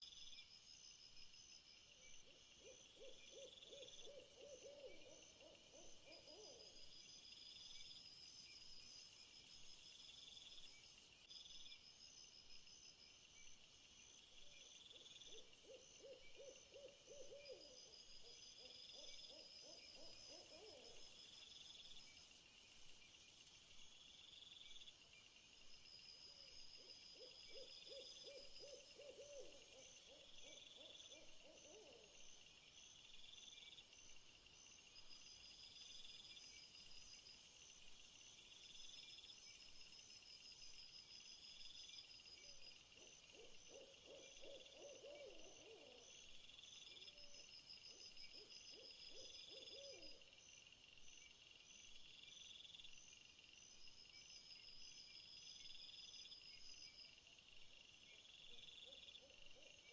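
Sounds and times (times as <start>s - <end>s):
insects chirping and trilling: 0.0s - 59.9s
owl hooting: 43.4s - 46.0s, 48.7s - 50.1s.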